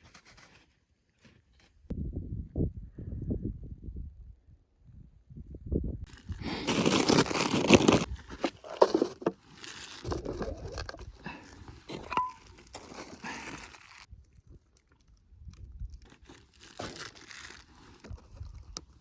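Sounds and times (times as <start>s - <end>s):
packaging tearing: 6.1s - 10.8s, 11.4s - 14.1s, 16.0s - 18.6s
plastic packaging crinkling: 6.1s - 14.1s, 16.0s - 18.8s.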